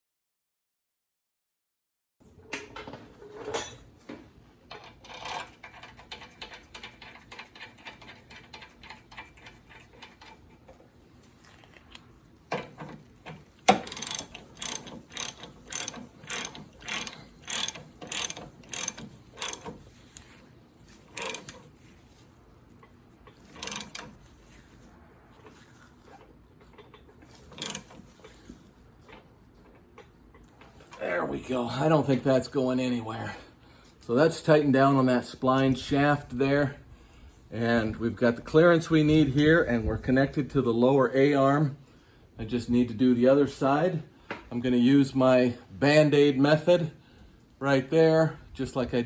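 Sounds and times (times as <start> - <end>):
socket ratchet clicking: 13.2 - 20.3, 21.1 - 21.6, 23.4 - 24.2, 27.4 - 28.3.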